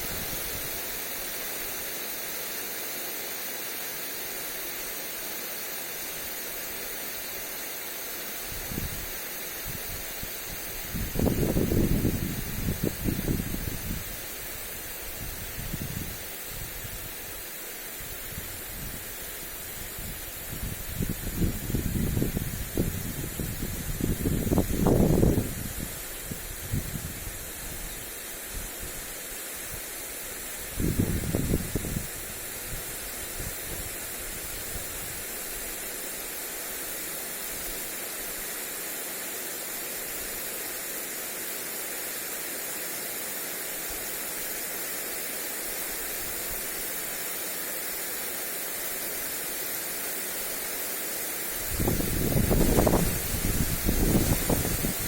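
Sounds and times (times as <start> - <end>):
sprinkler spraying water: 0.0 - 55.0
wind buffeting microphone: 9.7 - 14.1, 19.8 - 27.4, 30.7 - 34.0, 51.6 - 55.0.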